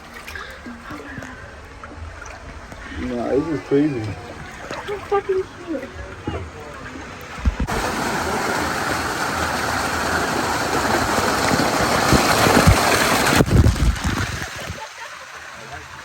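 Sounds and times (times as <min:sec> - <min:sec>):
jet ski engine rushing: 0:03.0 - 0:13.7
wind thumps on microphone: 0:07.3 - 0:08.1, 0:11.2 - 0:14.8.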